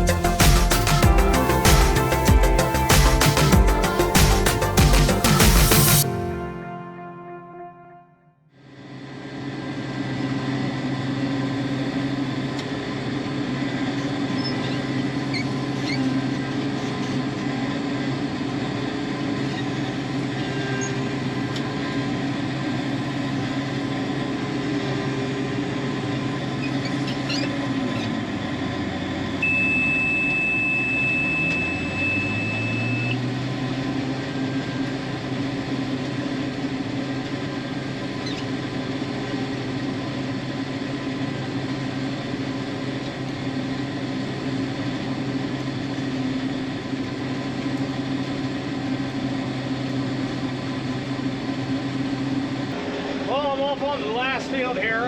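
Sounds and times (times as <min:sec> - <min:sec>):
combine harvester engine running: 0:00.0 - 0:07.4, 0:21.0 - 0:55.0
high-pitched warning beep: 0:29.4 - 0:33.2.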